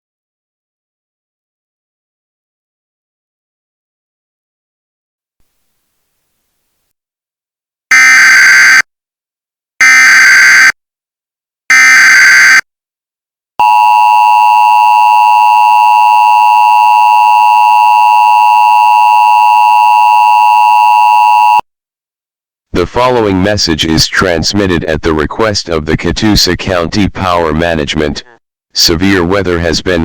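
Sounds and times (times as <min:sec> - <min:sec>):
two-tone attention signal: 0:13.6 - 0:21.6.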